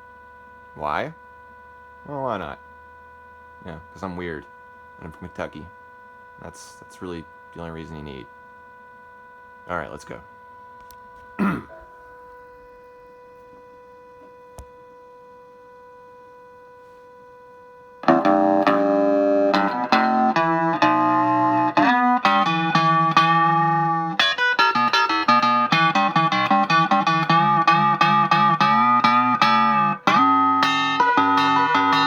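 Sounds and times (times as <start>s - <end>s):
faint steady electronic tone: 0.0s - 32.0s
ring-modulated electric guitar licks: 18.0s - 32.0s.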